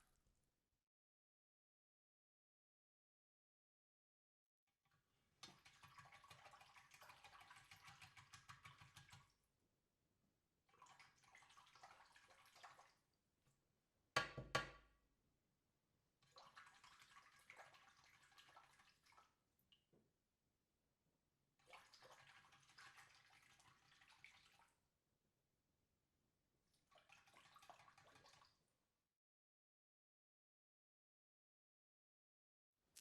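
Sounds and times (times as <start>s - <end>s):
water dripping and trickling: 5.4s - 9.3s, 10.7s - 13.1s, 16.2s - 19.9s, 21.6s - 24.7s, 26.9s - 28.6s.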